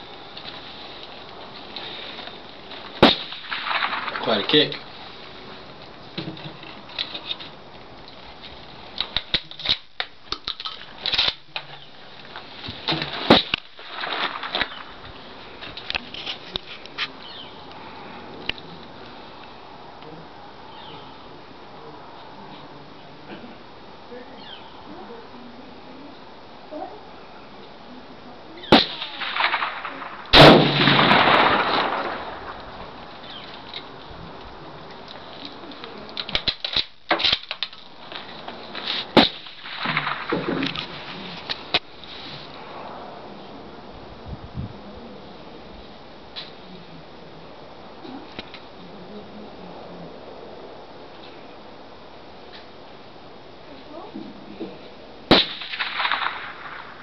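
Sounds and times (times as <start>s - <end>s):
loud rifle clack: 3.0s - 4.8s, 28.7s - 32.6s, 39.2s - 40.9s, 55.3s - 57.0s
long rolling echo: 28.6s - 36.2s, 55.3s - 57.0s.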